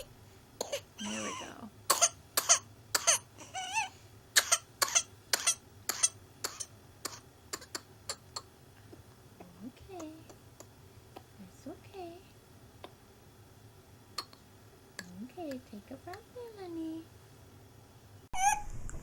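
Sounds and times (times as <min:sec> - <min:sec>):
child coughing in fits: 0:00.6 - 0:03.3, 0:04.4 - 0:08.5.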